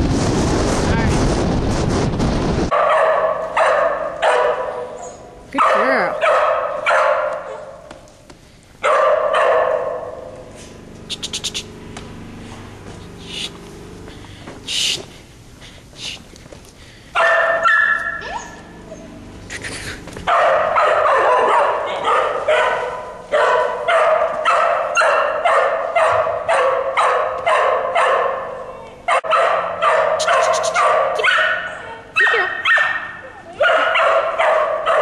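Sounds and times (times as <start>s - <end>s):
dog barking: 2.7s - 7.9s, 8.8s - 10.4s, 17.1s - 19.1s, 20.2s - 35.0s.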